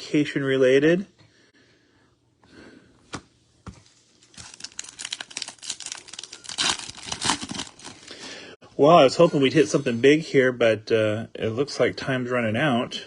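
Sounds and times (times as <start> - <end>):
foil wrapper tearing and crinkling: 4.2 - 8.2.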